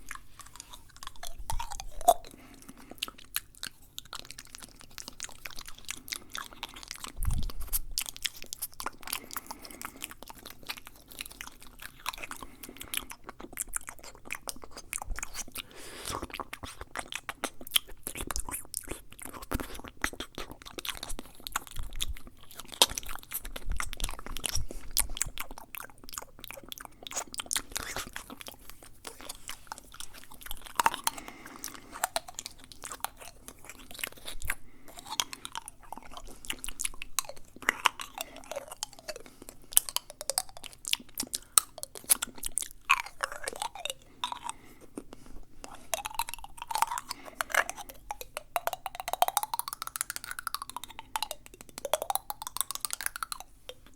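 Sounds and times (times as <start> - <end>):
sliding mouth noises: 0.0 - 53.9
wet mouth clicks and smacks: 0.0 - 53.9.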